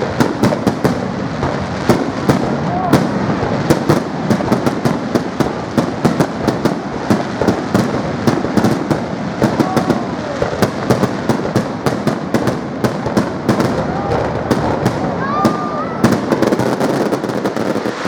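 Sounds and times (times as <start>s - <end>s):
fireworks bangs and cracks: 0.0s - 18.0s.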